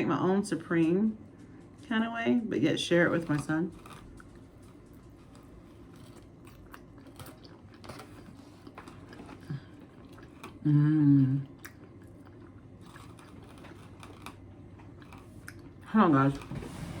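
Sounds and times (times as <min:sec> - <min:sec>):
person chewing pizza: 0:02.9 - 0:17.0
person humming mmm: 0:10.6 - 0:11.6.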